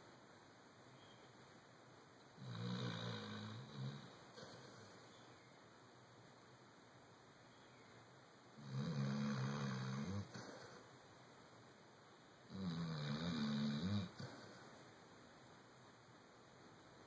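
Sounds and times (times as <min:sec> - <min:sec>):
dog snoring: 0:02.4 - 0:05.0, 0:08.6 - 0:10.8, 0:12.5 - 0:14.6.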